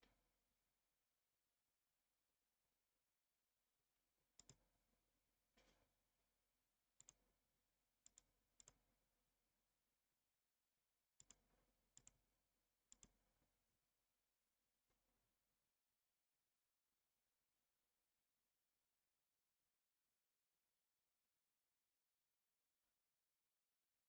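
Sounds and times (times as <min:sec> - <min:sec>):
computer mouse clicks: 0:04.4 - 0:04.6, 0:07.0 - 0:07.3, 0:08.0 - 0:08.9, 0:11.2 - 0:12.2, 0:12.9 - 0:13.2.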